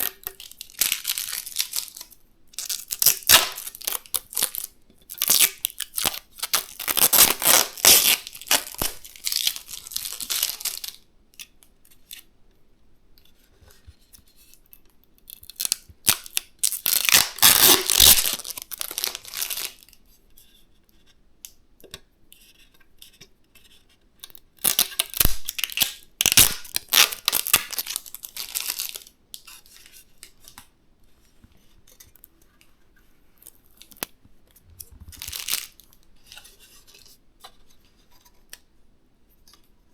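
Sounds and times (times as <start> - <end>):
material rustling and tearing: 0.0 - 11.0, 15.6 - 19.8, 24.6 - 30.0, 33.6 - 37.1.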